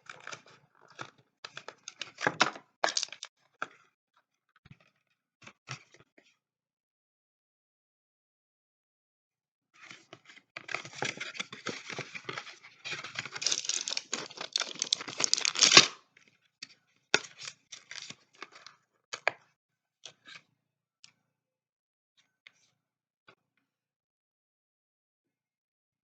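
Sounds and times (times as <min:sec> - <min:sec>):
packaging crinkling and tearing: 0:01.9 - 0:03.3, 0:10.8 - 0:16.0, 0:17.4 - 0:18.6.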